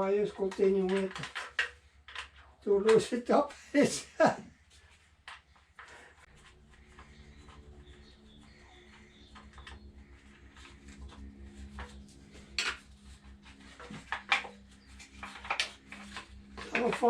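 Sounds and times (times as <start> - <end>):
steady low hum: 3.6 - 16.7
hand tools clinking on metal: 7.4 - 17.0.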